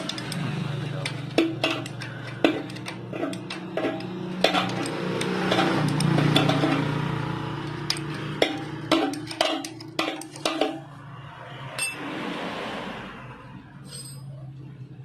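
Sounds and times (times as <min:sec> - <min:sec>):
metal clinks of wrench and parts: 0:00.0 - 0:06.8, 0:07.6 - 0:10.5, 0:13.8 - 0:14.4.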